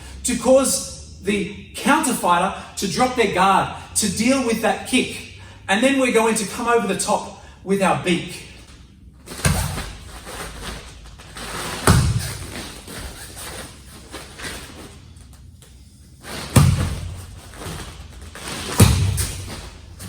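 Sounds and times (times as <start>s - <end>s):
dull heavy thumps: 9.3s - 14.9s, 16.2s - 20.0s.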